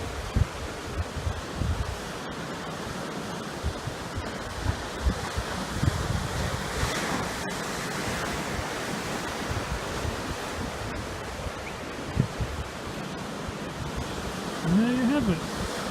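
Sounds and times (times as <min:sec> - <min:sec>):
wind buffeting microphone: 0:00.0 - 0:02.1, 0:03.6 - 0:14.4
surf breaking over rocks: 0:12.6 - 0:15.9.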